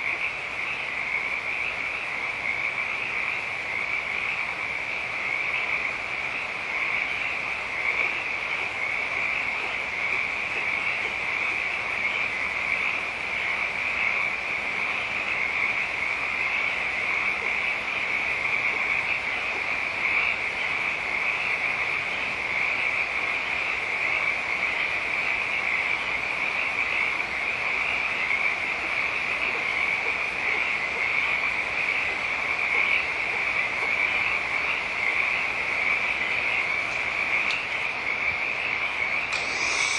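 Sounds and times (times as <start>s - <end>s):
chorus of frogs calling: 0.0s - 39.9s.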